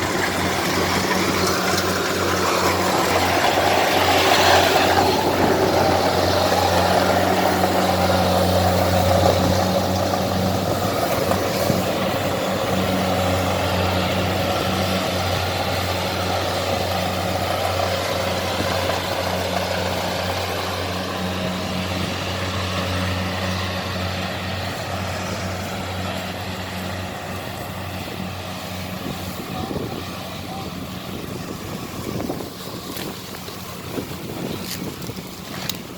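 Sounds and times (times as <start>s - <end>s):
combine harvester diesel engine: 0.0s - 35.9s.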